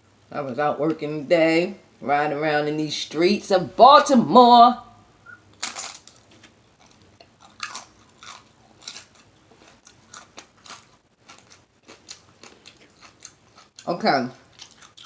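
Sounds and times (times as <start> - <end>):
person chewing food: 5.6 - 15.0.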